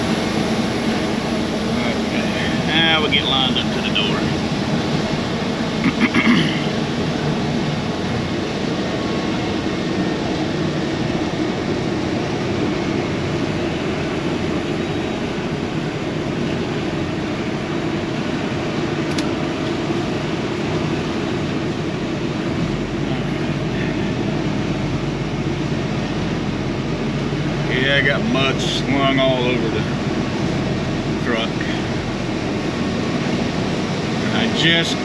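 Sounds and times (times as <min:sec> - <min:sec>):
deep low hum: 0:00.0 - 0:08.4
diesel engine running: 0:00.0 - 0:35.0.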